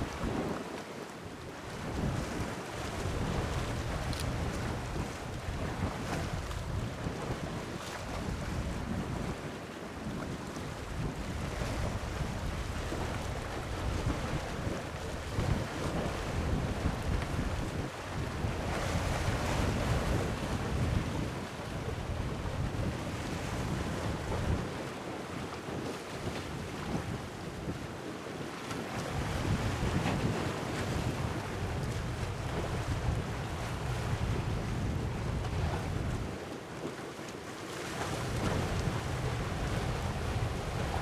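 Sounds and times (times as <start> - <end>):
wind buffeting microphone: 1.7 - 9.4, 29.2 - 36.4, 38.2 - 41.0.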